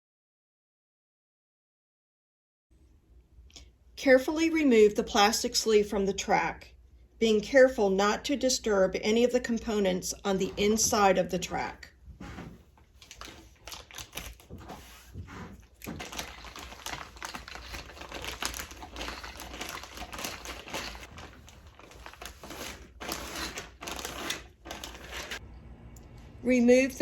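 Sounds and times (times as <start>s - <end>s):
plastic sleeve crinkling: 12.2s - 25.4s.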